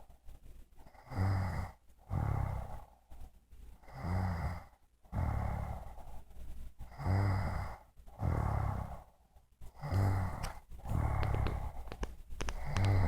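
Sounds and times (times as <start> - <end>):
woman snoring: 0.9 - 2.9, 3.8 - 6.0, 6.9 - 9.1, 9.7 - 13.0
noisy out-breath: 2.1 - 13.0.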